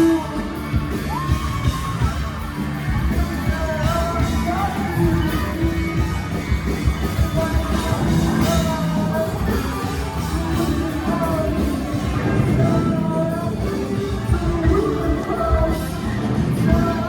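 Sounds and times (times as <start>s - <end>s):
rock band playing: 0.0s - 17.0s
person singing long notes: 7.0s - 17.0s.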